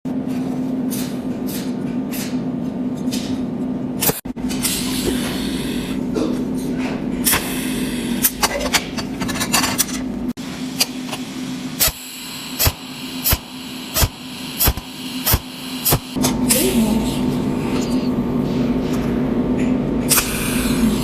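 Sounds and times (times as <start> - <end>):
welding machine buzzing: 10.4 - 16.6
sharp spark clicks: 12.6 - 16.2.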